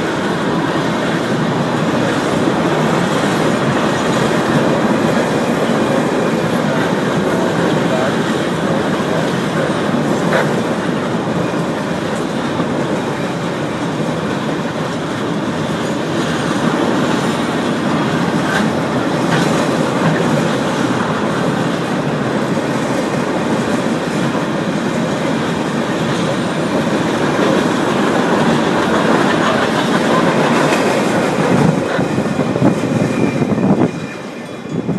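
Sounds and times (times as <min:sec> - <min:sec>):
train wheels rumbling on rails: 0:00.0 - 0:34.9
wheels clicking over rail joints: 0:00.0 - 0:34.9.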